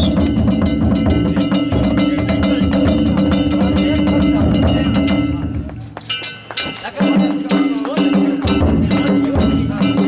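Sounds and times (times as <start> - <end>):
taiko drums: 0.0 - 10.0.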